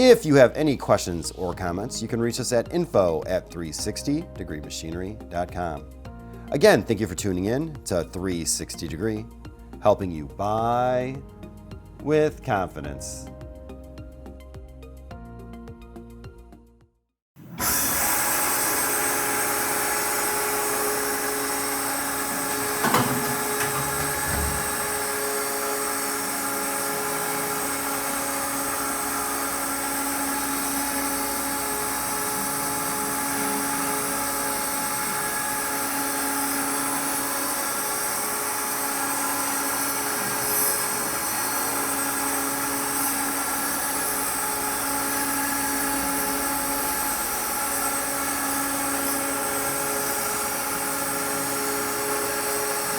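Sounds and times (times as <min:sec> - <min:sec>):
router spindle motor whining: 0:17.4 - 0:52.9
brief knock: 0:22.6 - 0:24.9.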